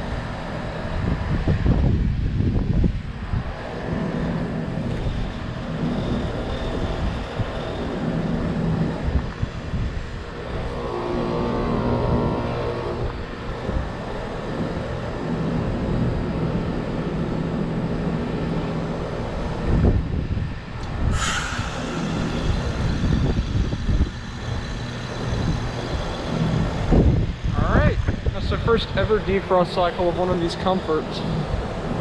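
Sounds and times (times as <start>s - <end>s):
heat pump humming: 0.0s - 32.0s
sharp falling hiss: 21.0s - 24.1s.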